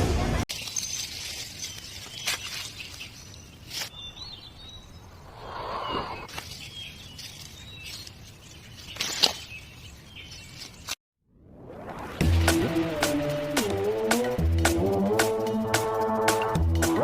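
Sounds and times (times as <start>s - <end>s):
birds chirping: 0.5s - 11.0s.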